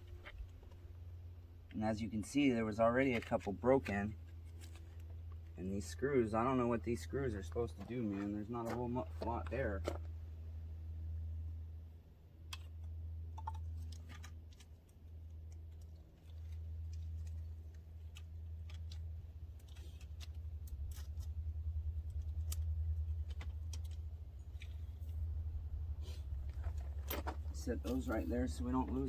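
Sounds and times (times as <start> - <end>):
steady low hum: 0.0 - 29.0
small clicks of screws and plastic parts: 12.5 - 21.3, 22.0 - 25.2.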